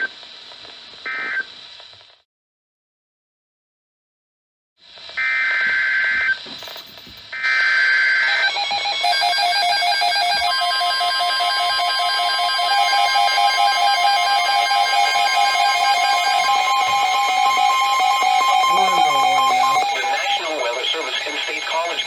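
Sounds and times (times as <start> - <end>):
harsh digital data bursts: 7.4 - 22.0
steady warning alarm tone: 7.4 - 22.0
warbling tones: 8.3 - 22.0.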